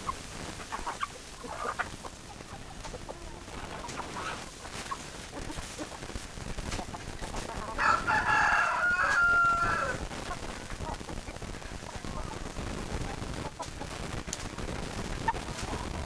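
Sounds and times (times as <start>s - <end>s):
rooster crowing: 7.7s - 10.0s.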